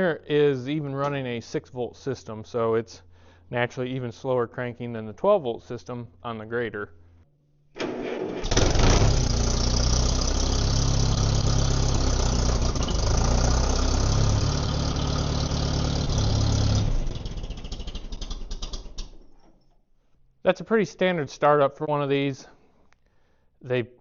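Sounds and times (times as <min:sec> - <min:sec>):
tractor engine cranking and running: 0:07.8 - 0:19.8.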